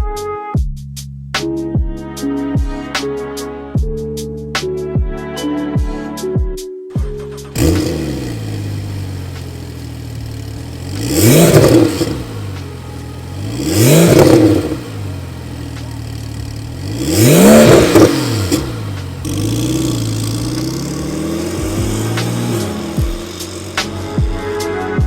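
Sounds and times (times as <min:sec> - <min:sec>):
car engine idling and revving: 0:07.0 - 0:24.8.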